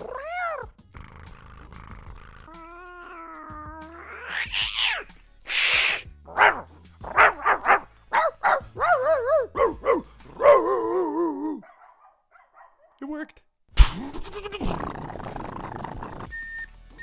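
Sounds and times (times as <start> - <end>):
man imitating dog yelps: 2.5 - 12.0
man making vocal sound effects: 13.8 - 16.3.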